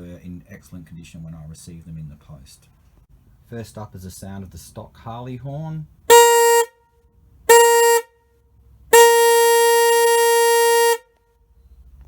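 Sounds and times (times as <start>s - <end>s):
motorcycle horn honks: 6.1s - 6.8s, 7.5s - 8.1s, 8.9s - 11.2s.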